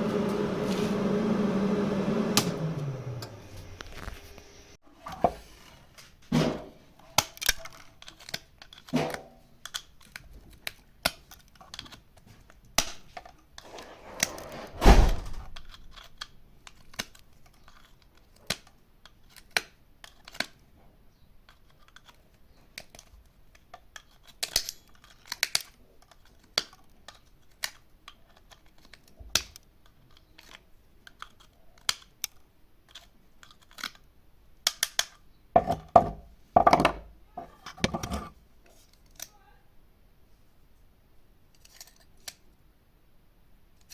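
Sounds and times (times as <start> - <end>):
louder thump: 14.7 - 15.6.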